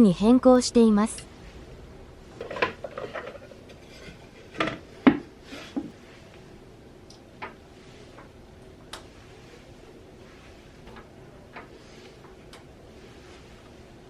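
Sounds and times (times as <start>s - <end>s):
hard parts knocking and clattering: 2.4s - 5.9s.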